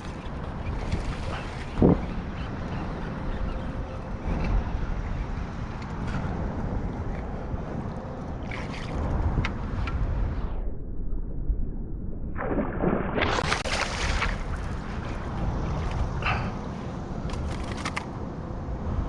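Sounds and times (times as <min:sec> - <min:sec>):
water lapping against boat: 0:00.0 - 0:04.0
wind rumbling on microphone: 0:00.0 - 0:19.0
water splashing: 0:12.4 - 0:16.1.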